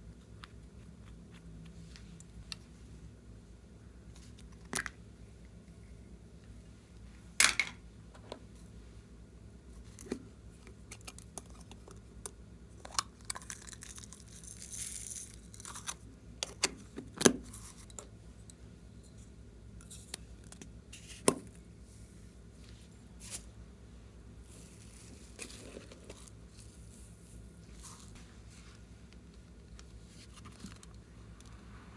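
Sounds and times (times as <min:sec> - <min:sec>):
soft rustle: 0:21.8 - 0:30.9.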